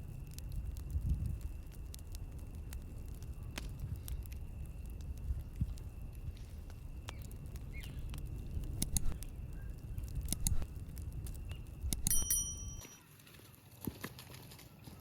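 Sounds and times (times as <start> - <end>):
low rumble: 0.0 - 12.3
campfire crackling and popping: 0.0 - 15.0
short metallic ring: 12.1 - 13.0.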